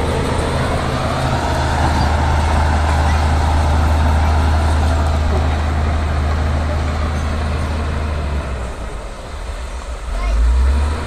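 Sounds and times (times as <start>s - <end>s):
bulldozer diesel engine droning: 0.0s - 11.0s.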